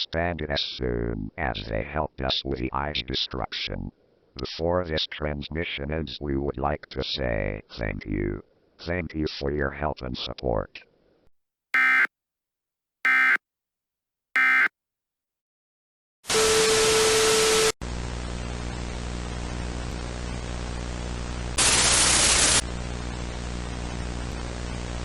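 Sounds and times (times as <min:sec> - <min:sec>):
digital data chirps: 0:11.8 - 0:12.1, 0:13.1 - 0:13.4, 0:14.4 - 0:14.7
tv static with low hum: 0:18.0 - 0:25.0.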